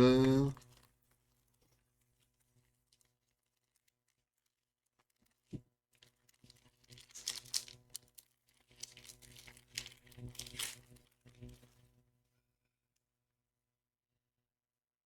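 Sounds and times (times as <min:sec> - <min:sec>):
foil wrapper tearing and crinkling: 0:00.6 - 0:12.0.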